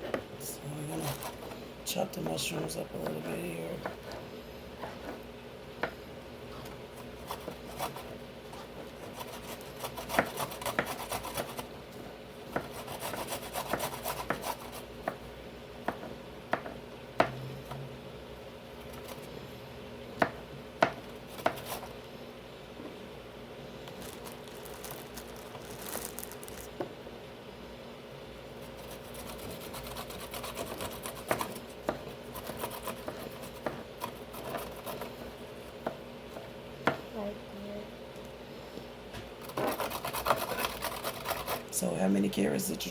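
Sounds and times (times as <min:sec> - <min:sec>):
faint steady hum: 0:00.0 - 0:42.9
knife chopping on cutting board: 0:09.0 - 0:11.6, 0:12.5 - 0:15.2, 0:15.8 - 0:17.4, 0:20.2 - 0:21.8, 0:29.0 - 0:35.2.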